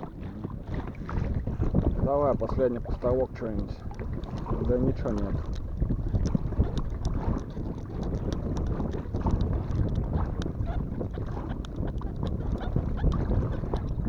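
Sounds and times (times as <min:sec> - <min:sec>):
wind buffeting microphone: 0:00.0 - 0:14.0
light clicks and knocks: 0:03.6 - 0:10.0.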